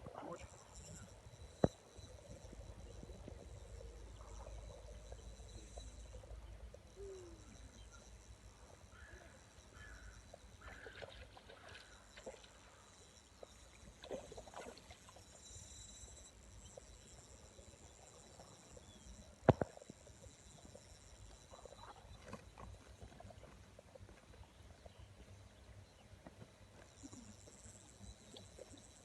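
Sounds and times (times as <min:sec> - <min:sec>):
high insect buzz: 0:00.2 - 0:22.7, 0:26.7 - 0:29.0
faint chirps: 0:00.2 - 0:23.6, 0:24.3 - 0:29.0
small clicks and knocks: 0:16.4 - 0:21.4.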